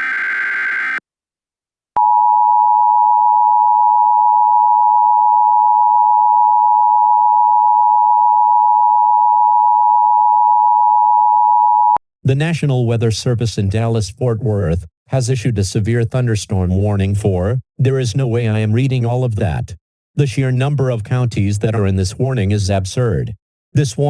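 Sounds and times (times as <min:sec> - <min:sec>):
buzzy data burst: 0:00.0 - 0:01.0.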